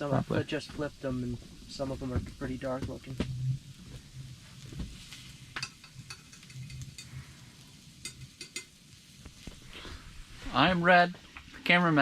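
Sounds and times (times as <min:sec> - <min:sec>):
meat frying in a pan: 0:00.0 - 0:12.0
utensil clicking against pan: 0:05.6 - 0:07.2, 0:08.0 - 0:08.8.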